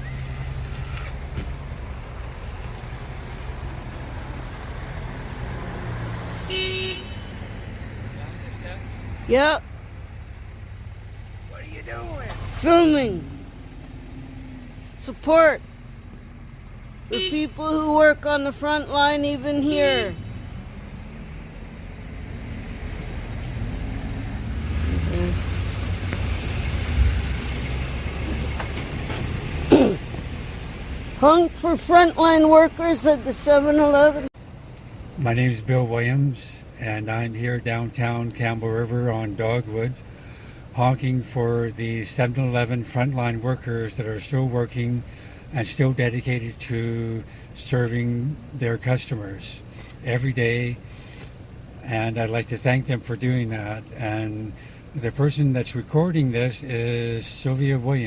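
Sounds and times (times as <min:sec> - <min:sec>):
vehicle rumble: 0:00.0 - 0:58.0
car horn toot: 0:06.4 - 0:07.4, 0:17.0 - 0:20.2.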